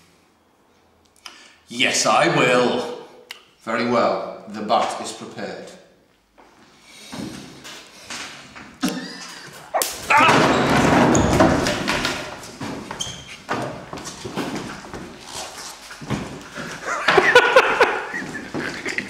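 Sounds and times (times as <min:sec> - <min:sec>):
man yelping and crying out: 0:09.7 - 0:10.5
sharp crack: 0:09.8 - 0:10.6.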